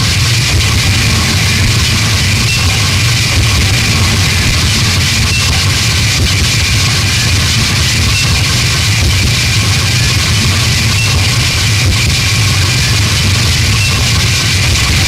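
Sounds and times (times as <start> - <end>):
harsh distorted noise music: 0.0 - 15.0.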